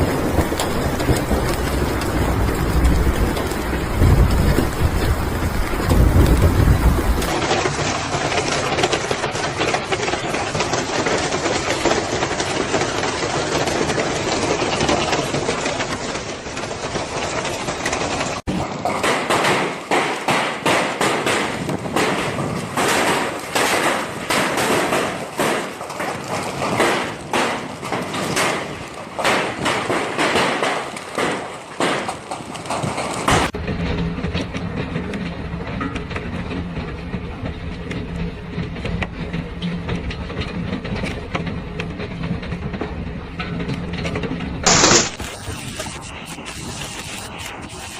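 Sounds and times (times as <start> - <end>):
hailstones knocking on hard surface: 0.0 - 33.6, 43.6 - 47.9
heavy hail clattering: 0.0 - 35.2, 36.2 - 47.9.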